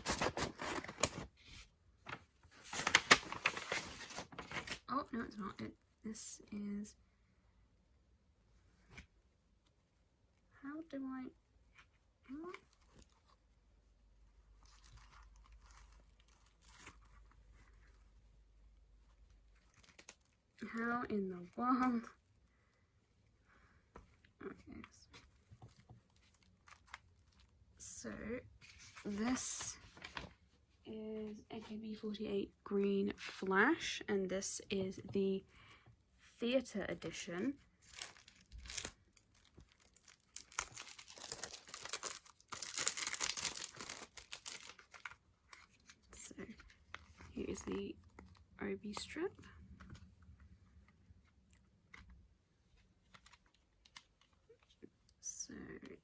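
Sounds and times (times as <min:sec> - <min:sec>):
plastic packaging tearing: 0:37.8 - 0:45.2.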